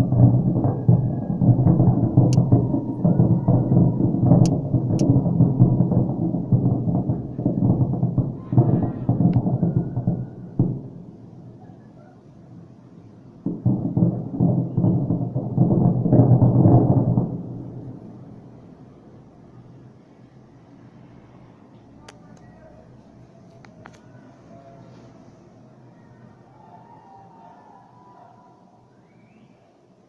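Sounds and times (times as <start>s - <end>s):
fireworks booming shell bursts: 0.0s - 11.3s, 13.4s - 18.2s.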